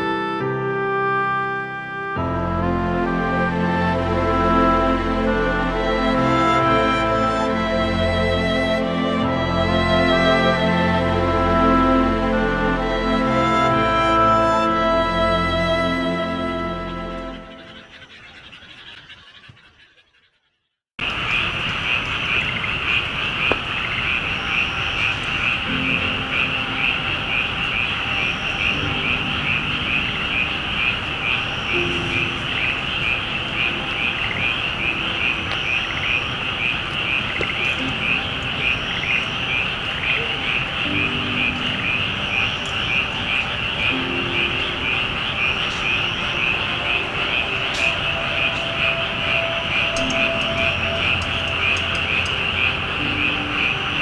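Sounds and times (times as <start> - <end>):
music: 0.0 - 17.8, 24.2 - 54.0
faint animal calls: 16.4 - 54.0
rapid pulsing animal trill: 16.9 - 54.0.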